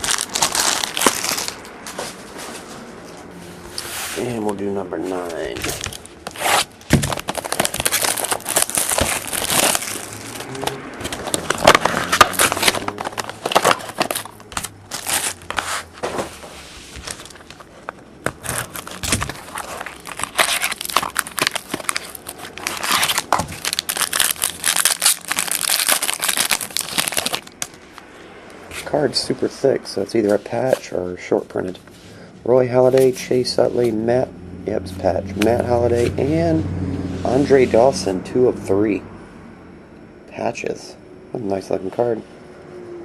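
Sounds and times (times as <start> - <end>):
plastic wrapper crinkling and tearing: 0.0 - 1.9, 5.6 - 15.6, 17.0 - 28.0.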